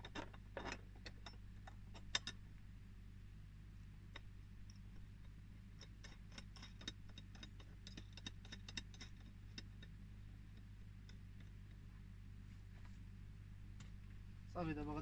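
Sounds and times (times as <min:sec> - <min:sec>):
steady low hum: 0:00.0 - 0:15.0
faint clicks and light taps: 0:04.1 - 0:13.1, 0:13.7 - 0:14.2.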